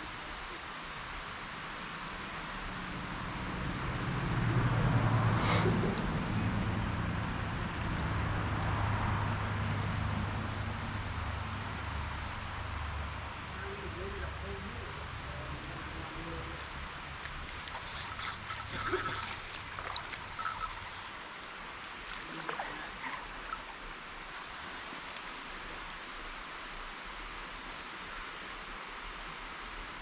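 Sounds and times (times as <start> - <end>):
insect hum: 12.8 - 30.0
high chirps and clicks: 17.2 - 24.0.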